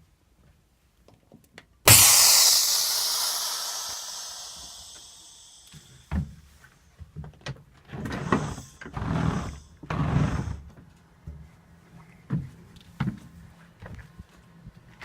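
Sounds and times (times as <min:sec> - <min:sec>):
sharp knock: 0:01.9 - 0:05.9.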